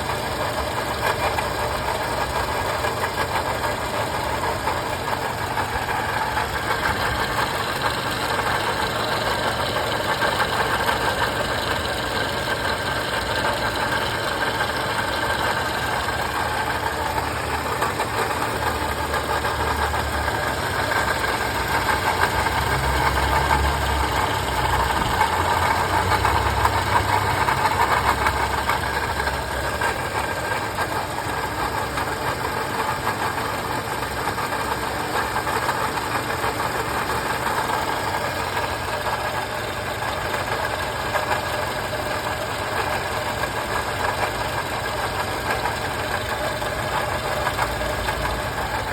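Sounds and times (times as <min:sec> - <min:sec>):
car engine idling: 0:00.0 - 0:48.9
engine rattle: 0:00.0 - 0:48.9.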